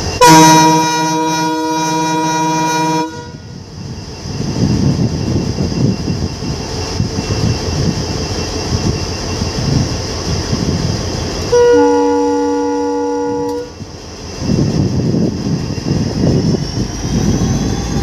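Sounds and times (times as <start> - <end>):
train rumbling and clattering: 0.0 - 18.0
locomotive horn chord: 0.2 - 3.5, 11.5 - 13.8.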